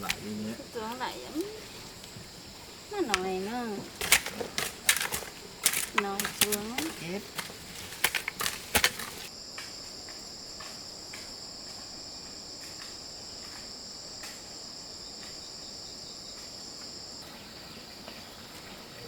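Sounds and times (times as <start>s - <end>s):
insects trilling: 0.0s - 19.0s
faint clicks: 3.0s - 9.3s.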